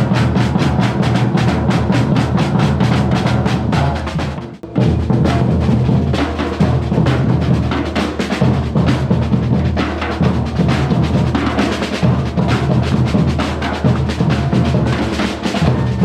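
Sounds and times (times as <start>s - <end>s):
percussion ensemble drumming: 0.0s - 16.0s.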